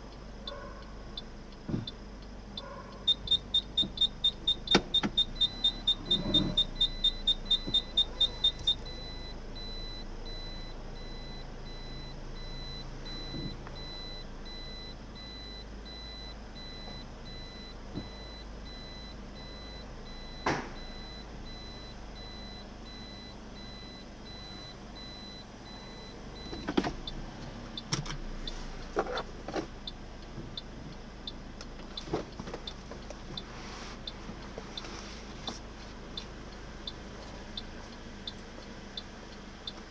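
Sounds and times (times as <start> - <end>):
reversing sensor beeping: 0.4 - 29.2.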